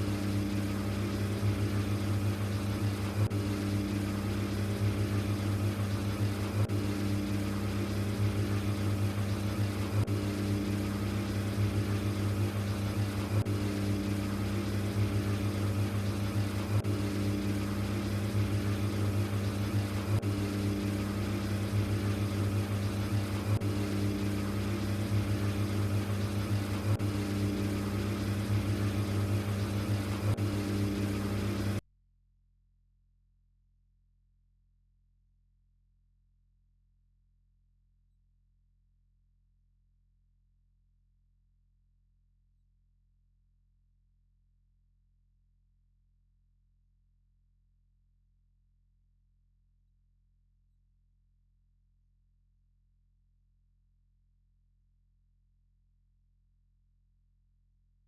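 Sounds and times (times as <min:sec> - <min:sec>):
faint pulsing tone: 0:00.0 - 0:31.8
washing machine humming: 0:00.0 - 0:31.8.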